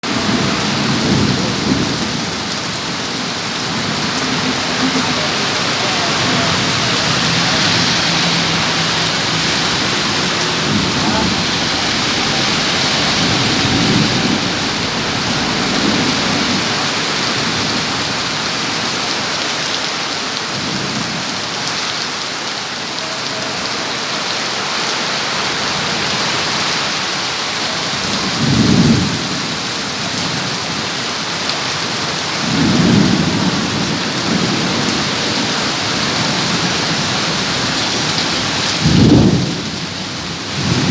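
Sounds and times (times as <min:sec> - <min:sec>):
heavy rain pouring: 0:00.0 - 0:40.9
low rumbles of thunder: 0:00.1 - 0:18.3, 0:27.9 - 0:30.8, 0:38.5 - 0:40.9.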